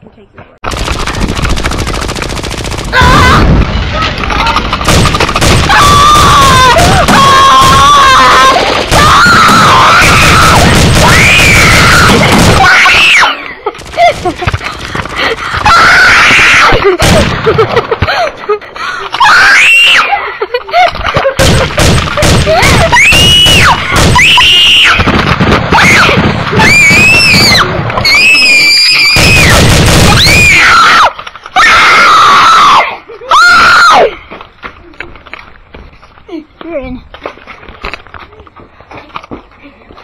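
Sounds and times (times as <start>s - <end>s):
children screaming: 2.9s - 4.9s, 5.6s - 13.7s, 15.2s - 17.0s, 19.0s - 20.5s, 22.4s - 25.1s, 25.7s - 34.2s.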